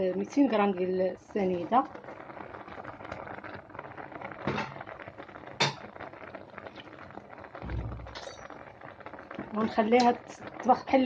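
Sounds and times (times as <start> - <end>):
faint steady hiss: 0.0 - 11.0
dull low thump: 7.6 - 8.2.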